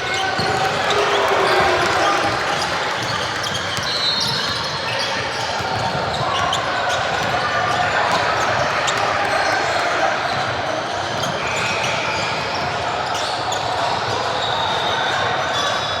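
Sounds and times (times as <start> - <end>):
din of voices in hall: 0.0 - 16.0
basketball bouncing on court: 0.1 - 8.7.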